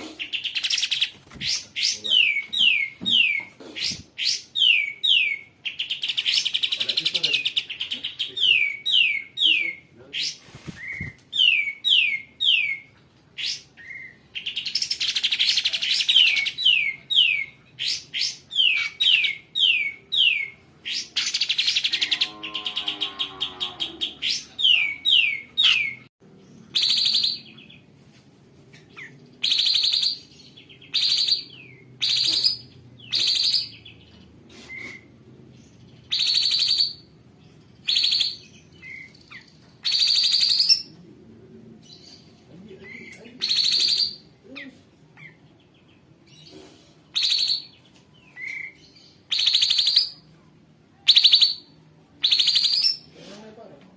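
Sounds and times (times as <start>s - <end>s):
harsh raspy bird calls: 13.4s - 26.1s.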